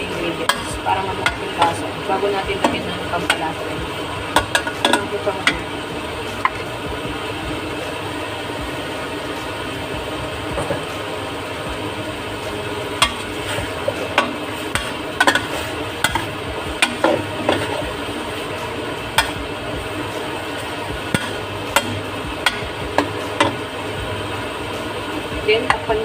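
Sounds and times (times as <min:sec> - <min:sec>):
food sizzling in a pan: 0:00.0 - 0:26.0
utensil clicking against pan: 0:21.1 - 0:23.6.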